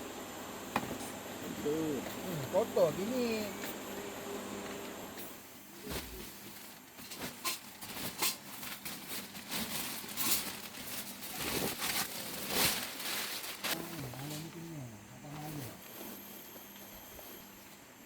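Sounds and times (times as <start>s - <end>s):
rustling and crinkling: 5.8s - 14.7s.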